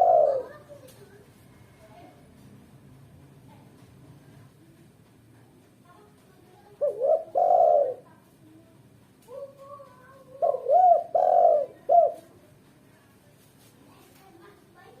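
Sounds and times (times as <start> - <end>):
dove cooing: 0.0 - 0.8, 6.8 - 8.1, 9.4 - 12.3.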